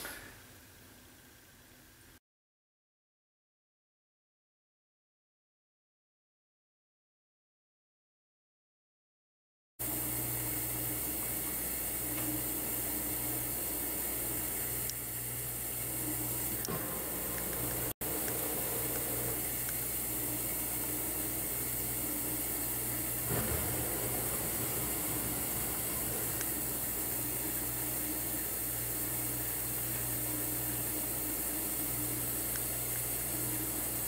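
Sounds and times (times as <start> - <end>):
low motor hum: 15.8 - 30.7
even hiss: 21.4 - 29.6.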